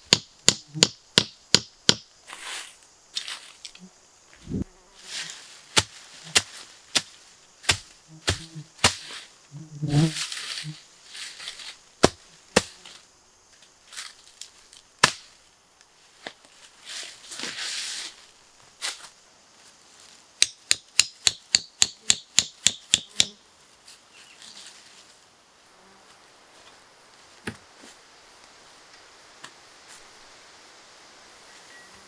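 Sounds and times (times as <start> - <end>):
sharp blows on wood: 0.0 - 2.1, 5.8 - 9.2, 20.4 - 23.4
rustling: 2.2 - 15.4, 16.0 - 20.2.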